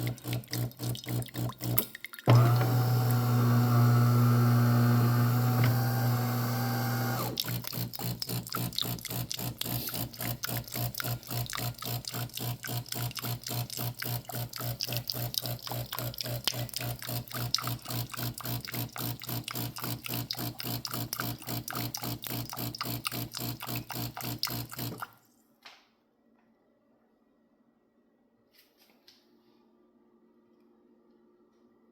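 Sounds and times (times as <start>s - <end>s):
water pump pulsing: 0.0s - 25.2s.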